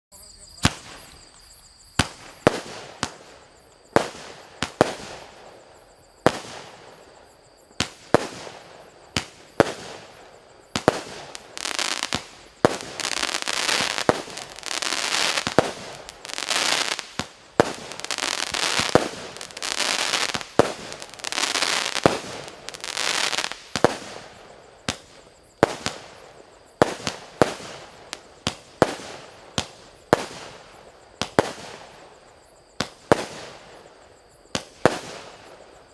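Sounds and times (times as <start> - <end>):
firework launch and burst bangs: 15.2 - 21.3.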